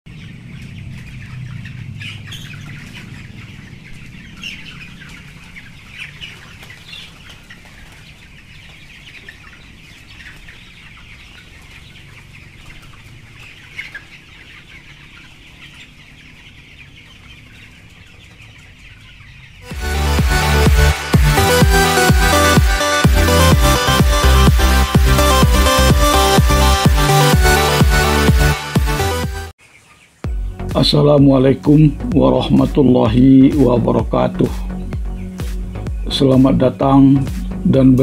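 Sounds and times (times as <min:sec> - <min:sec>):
chickens calling: 0:00.1 - 0:38.0
loud electronic dance music: 0:19.6 - 0:29.5, 0:30.3 - 0:38.0.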